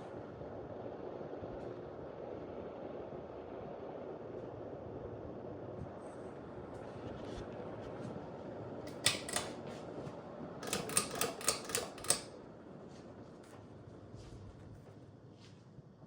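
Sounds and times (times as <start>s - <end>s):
ceiling fan whooshing: 0.0s - 16.0s
sharp clicks: 8.9s - 9.6s, 10.6s - 12.3s.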